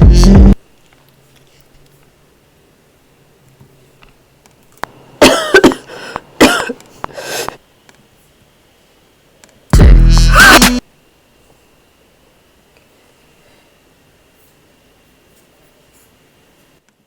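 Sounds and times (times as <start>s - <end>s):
person coughing harshly: 5.2s - 6.8s.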